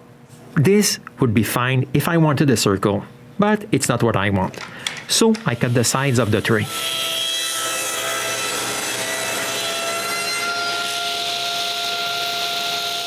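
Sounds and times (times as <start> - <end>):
power saw cutting wood: 5.4 - 13.0.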